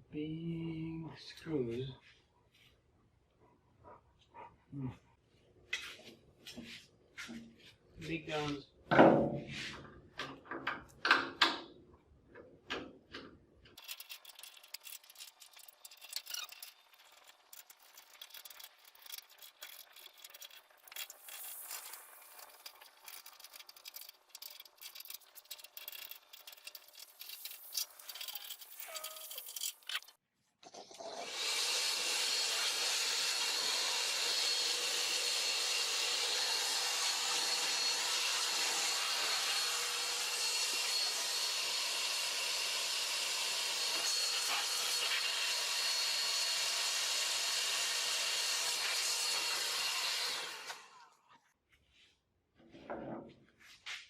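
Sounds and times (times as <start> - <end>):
hand tools clicking on metal: 12.7 - 21.2, 21.8 - 30.1.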